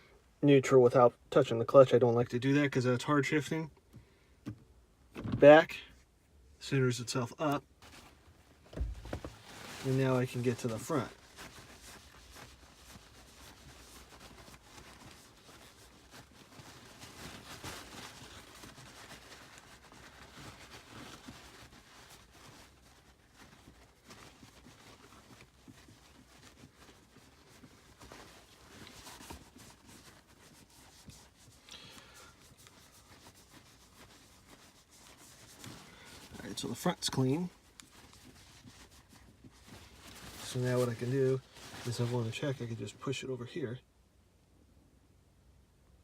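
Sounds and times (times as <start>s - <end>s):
paper towel rubbing: 7.8s - 43.2s.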